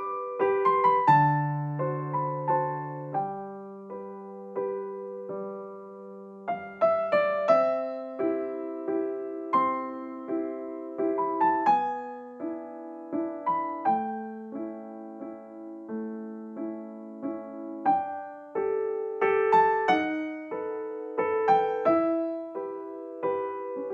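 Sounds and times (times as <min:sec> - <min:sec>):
slow piano music: 0:00.0 - 0:23.9.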